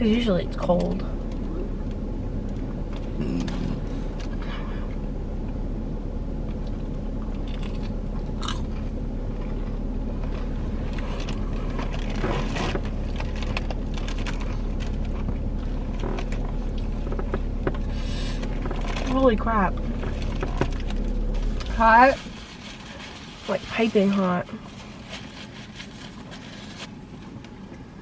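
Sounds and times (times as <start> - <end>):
low hum: 0.0 - 28.0
chewing and crunching food: 6.4 - 27.9.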